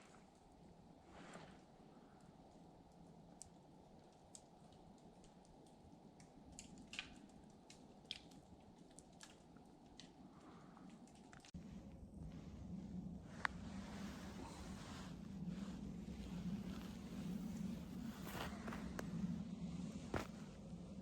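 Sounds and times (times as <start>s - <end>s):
faint irregular clicks: 1.6s - 11.6s.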